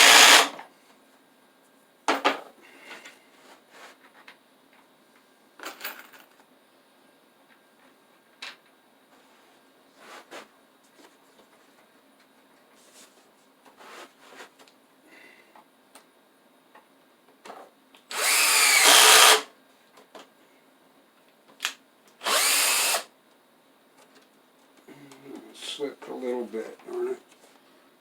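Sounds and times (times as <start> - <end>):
power drill driving screws: 0.0 - 0.6, 18.1 - 19.5, 22.2 - 23.1.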